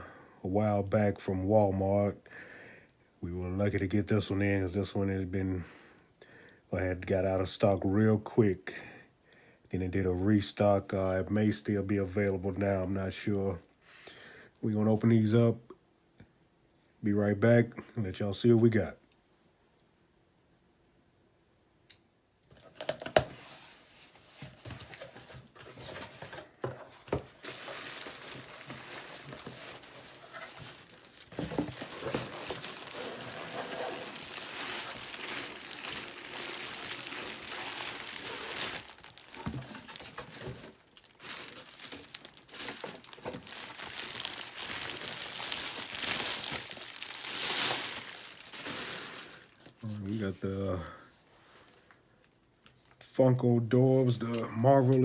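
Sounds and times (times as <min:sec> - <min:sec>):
packing material crinkling and tearing: 0:22.5 - 0:50.0.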